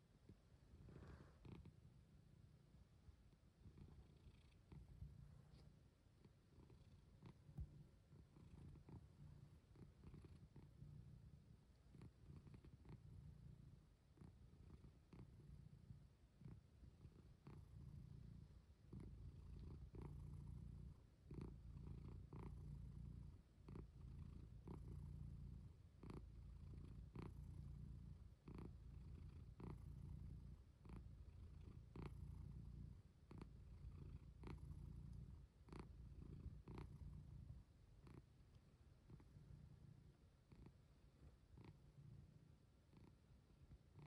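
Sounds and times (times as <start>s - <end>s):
pet snoring softly: 0.7s - 1.9s, 3.6s - 38.3s, 39.0s - 44.0s.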